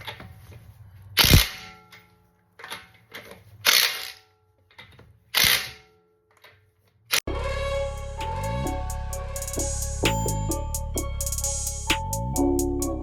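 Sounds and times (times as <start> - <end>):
background music with a beat: 7.3 - 13.0.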